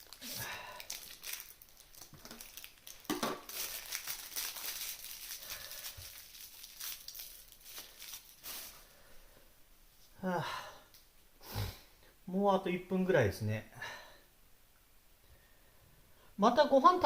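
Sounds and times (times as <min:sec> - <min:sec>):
crinkling and rustling: 0:00.0 - 0:08.8.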